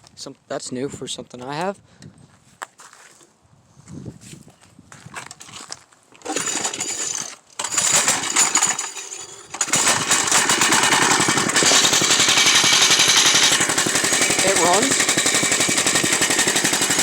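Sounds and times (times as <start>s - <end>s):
small engine starting and running: 6.2s - 17.0s.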